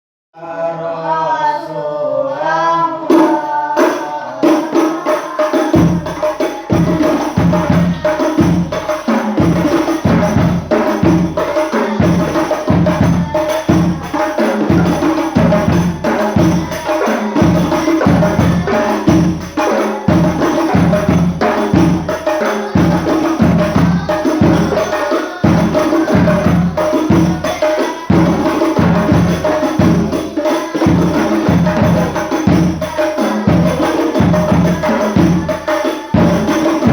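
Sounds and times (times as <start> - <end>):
person singing: 0.4 - 8.6, 11.4 - 19.2, 22.5 - 29.0, 30.4 - 36.9
frame drums and bass drum: 4.4 - 36.9.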